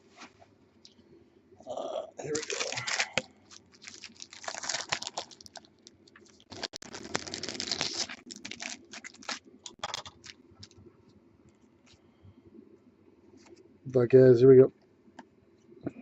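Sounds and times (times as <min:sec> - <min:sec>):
foil wrapper crinkling and tearing: 0:02.2 - 0:10.8.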